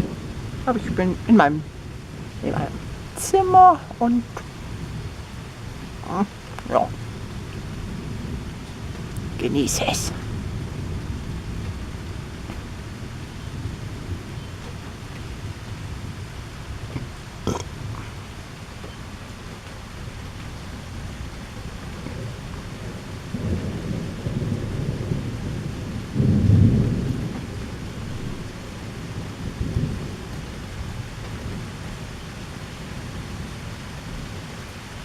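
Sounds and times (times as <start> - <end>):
steady rain: 0.0 - 35.0
thunder rumbling: 0.0 - 35.0.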